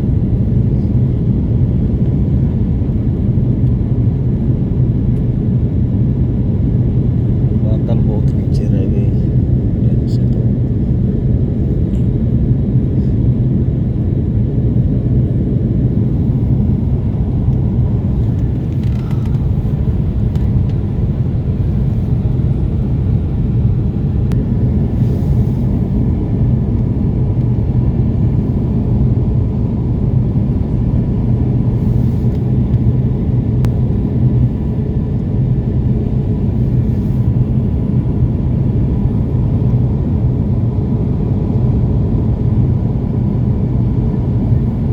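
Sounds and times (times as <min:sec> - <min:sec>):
airliner cabin rumble: 0:00.0 - 0:44.9.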